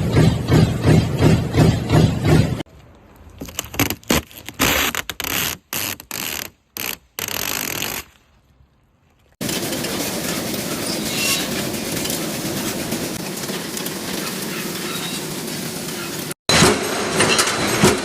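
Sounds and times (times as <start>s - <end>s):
steady loud machine noise: 9.4s - 18.0s.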